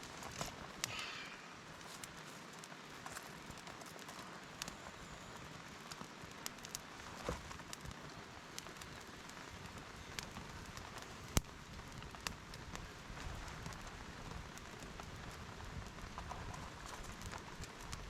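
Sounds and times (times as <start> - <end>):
rain falling: 0.0 - 18.0.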